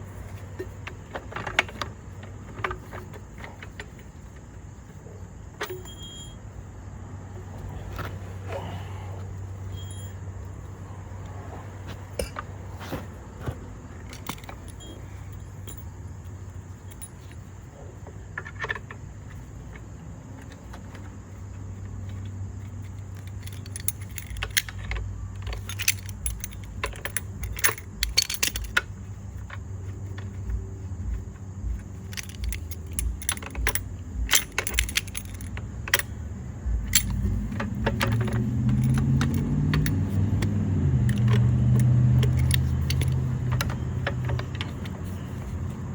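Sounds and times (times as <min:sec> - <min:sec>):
steady low hum: 0:00.0 - 0:45.9
metal tools clinking: 0:05.6 - 0:06.4, 0:09.5 - 0:10.7, 0:12.1 - 0:17.7, 0:22.8 - 0:45.9.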